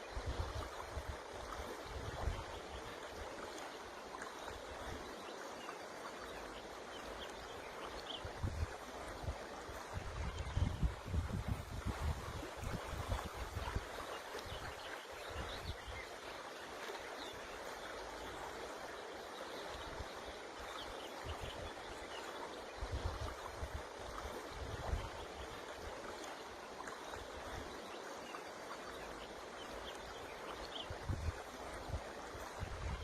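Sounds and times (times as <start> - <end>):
wind gusts on microphone: 0.1 - 2.6, 8.2 - 16.1, 22.8 - 25.2, 30.8 - 33.0
river water rushing: 0.2 - 33.0.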